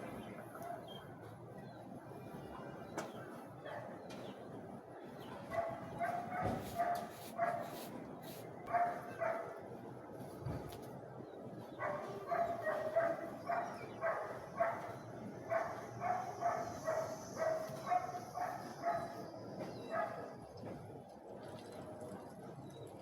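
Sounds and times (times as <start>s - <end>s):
dog barking: 3.7s - 4.0s, 5.5s - 7.8s, 8.7s - 9.6s, 11.8s - 19.2s, 19.9s - 20.3s.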